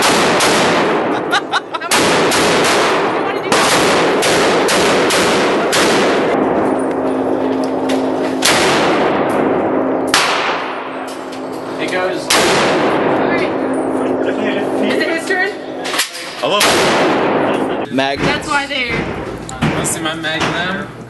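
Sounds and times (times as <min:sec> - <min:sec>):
gunshots with echo: 0:00.0 - 0:01.3, 0:01.9 - 0:06.8, 0:08.4 - 0:11.1, 0:12.3 - 0:13.6, 0:16.6 - 0:17.7
steady low hum: 0:00.0 - 0:21.0.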